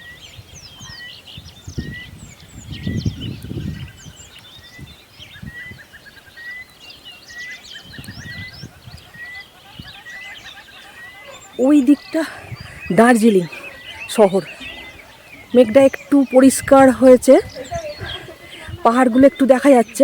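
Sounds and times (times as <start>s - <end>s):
wild birds chirping and calling: 0.0s - 20.0s.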